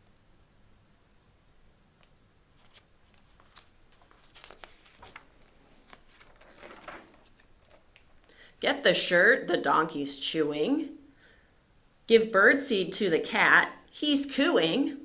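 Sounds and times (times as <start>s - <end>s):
paper rustling and clicking: 2.5s - 8.4s.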